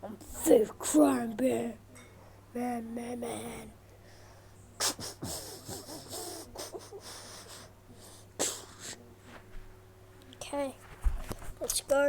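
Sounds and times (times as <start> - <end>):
child sniff: 4.1 - 9.0.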